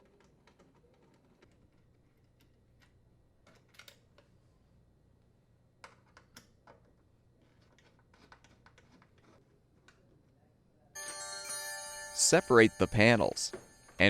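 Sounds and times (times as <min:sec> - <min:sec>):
background music: 0:11.0 - 0:14.0.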